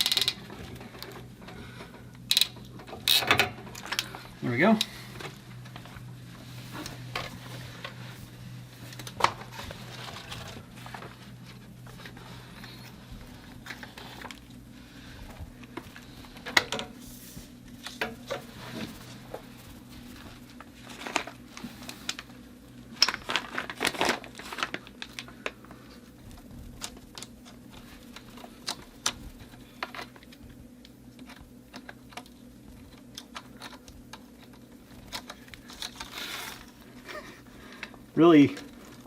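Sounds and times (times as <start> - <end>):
low steady hum: 0.0 - 39.0
clicks and knocks of handling tubing: 15.3 - 17.0.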